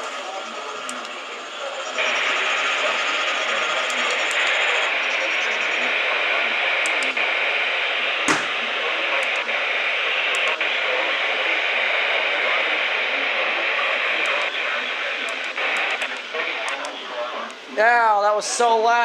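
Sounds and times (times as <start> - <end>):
radio static hiss: 0.0 - 19.0
sharp click: 8.3 - 8.6.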